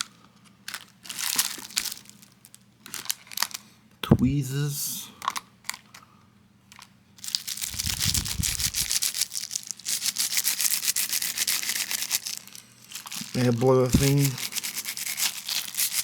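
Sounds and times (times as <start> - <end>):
plastic packaging rustling: 0.6 - 3.6, 6.7 - 16.0.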